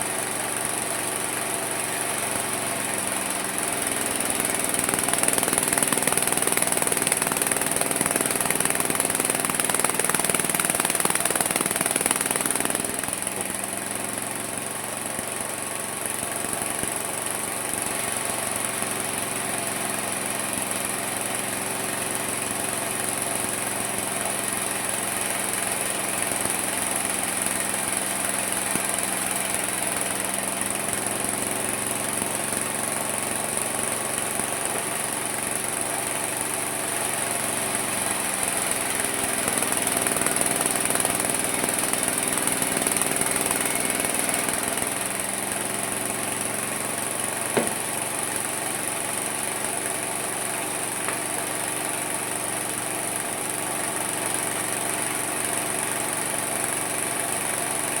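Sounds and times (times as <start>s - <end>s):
sawmill motor drone: 0.0s - 20.1s, 21.0s - 58.0s
saw blade cutting wood: 3.6s - 13.5s.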